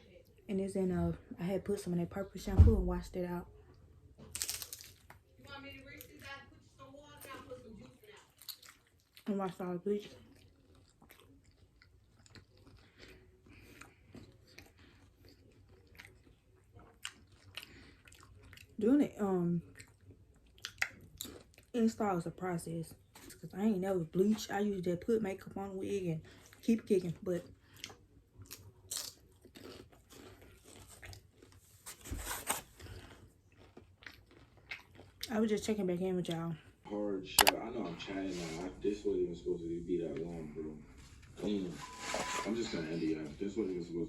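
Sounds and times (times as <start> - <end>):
person chewing food: 8.2 - 9.3, 10.0 - 18.8, 19.6 - 21.7, 27.4 - 35.4.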